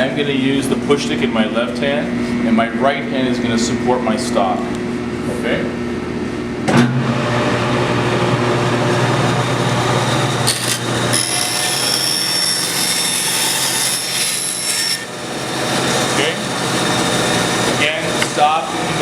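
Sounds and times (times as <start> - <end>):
bandsaw cutting wood: 9.8 - 19.0.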